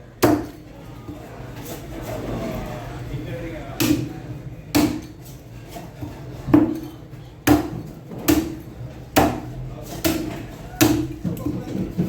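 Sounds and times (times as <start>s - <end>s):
knife chopping fish: 0.2s - 0.6s, 3.8s - 4.1s, 4.7s - 5.2s, 7.4s - 11.3s.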